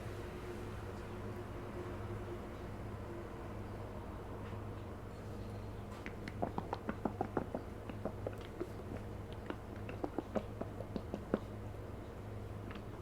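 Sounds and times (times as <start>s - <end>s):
wet lip smacks: 6.0s - 11.5s.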